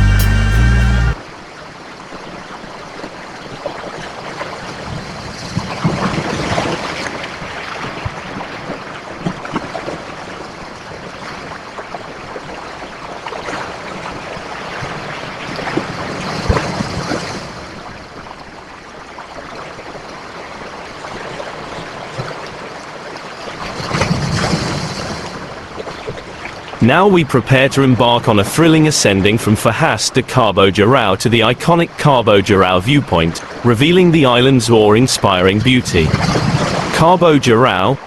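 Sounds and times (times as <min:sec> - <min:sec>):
ocean waves breaking: 0:36.0 - 0:37.0.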